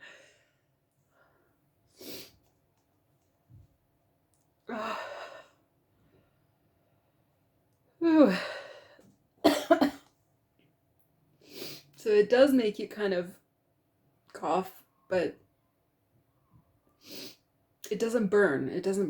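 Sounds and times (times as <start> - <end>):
woman coughing: 9.4 - 10.1.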